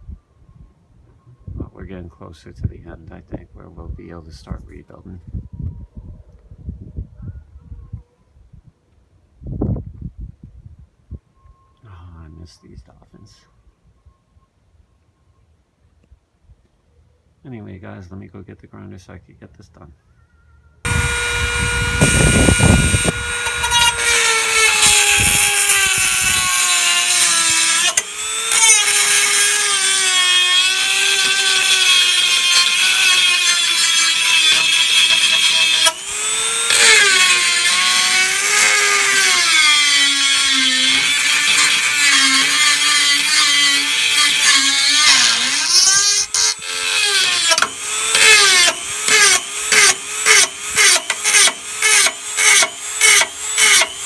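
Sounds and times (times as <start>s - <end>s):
power grinder whining: 20.9s - 54.0s.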